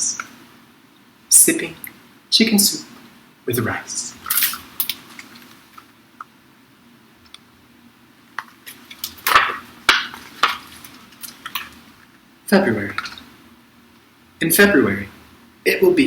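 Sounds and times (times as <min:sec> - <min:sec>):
book pages rustling: 0:08.4 - 0:12.0.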